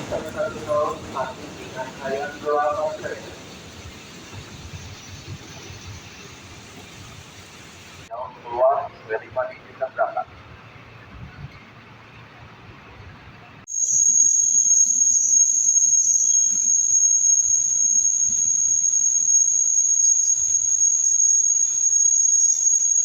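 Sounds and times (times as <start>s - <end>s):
train low rumble: 0.0s - 13.8s
high-pitched electrical whine: 13.7s - 23.0s.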